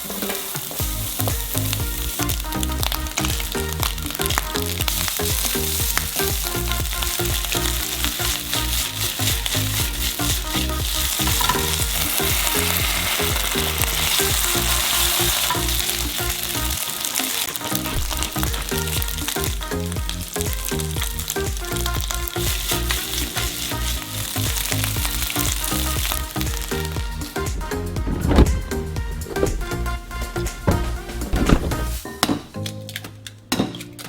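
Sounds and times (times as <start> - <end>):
food sizzling in a hot pan: 0.0 - 27.4
quiet background music: 0.0 - 34.0
stirring in a pan: 3.2 - 27.5.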